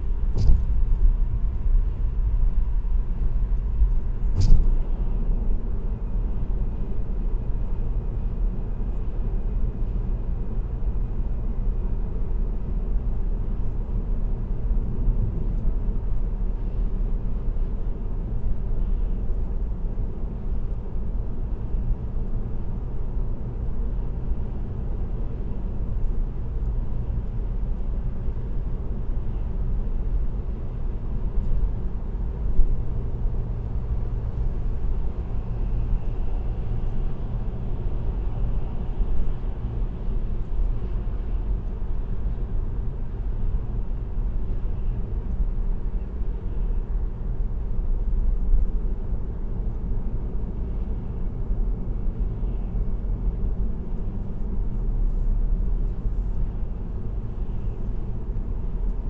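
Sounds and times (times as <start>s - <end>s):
car tyres and engine rumble: 0.0s - 59.0s
brief knock: 0.3s - 0.8s.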